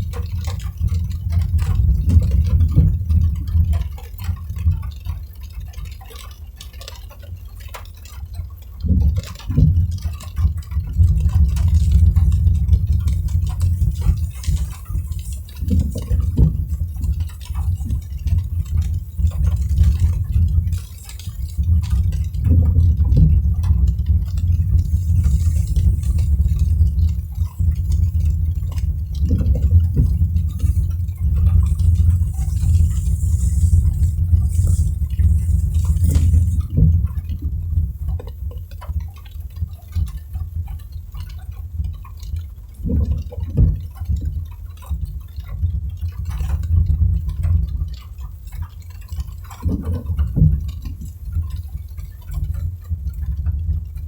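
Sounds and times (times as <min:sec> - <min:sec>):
raindrops tapping: 0:00.0 - 0:54.0
car driving rumble: 0:19.1 - 0:37.2
faint hiss: 0:24.2 - 0:37.2.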